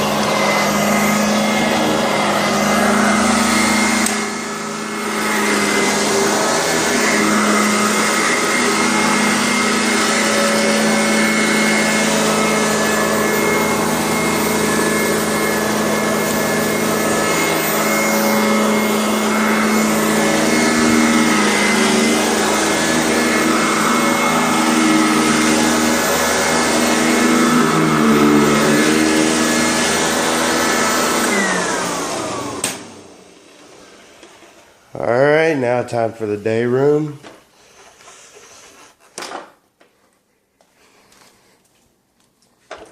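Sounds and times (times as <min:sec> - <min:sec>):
vacuum motor spinning down: 0:00.0 - 0:34.3
vacuum cleaner running: 0:00.0 - 0:35.4.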